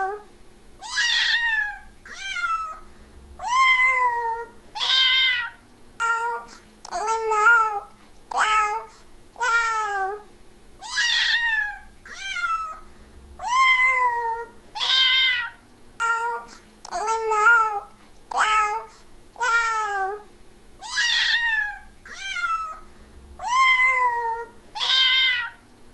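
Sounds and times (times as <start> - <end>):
cat meowing: 0.8 - 2.8, 3.4 - 6.4, 10.8 - 12.8, 13.4 - 20.2, 20.8 - 22.8, 23.4 - 25.6.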